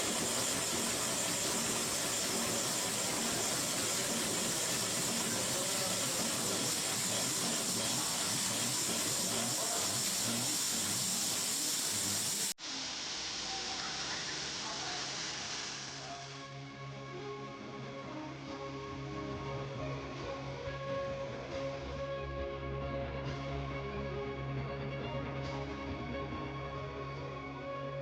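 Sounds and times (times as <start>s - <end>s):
diesel engine running: 0.0s - 12.5s.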